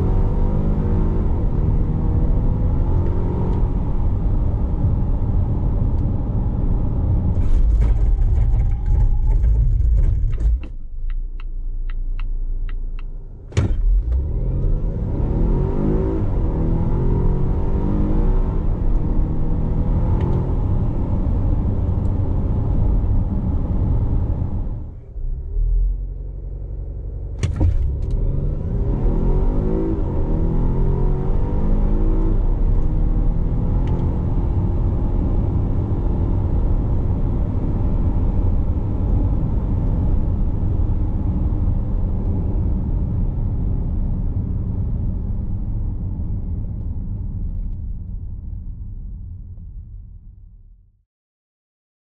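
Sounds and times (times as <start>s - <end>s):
car engine accelerating: 0.0s - 47.7s.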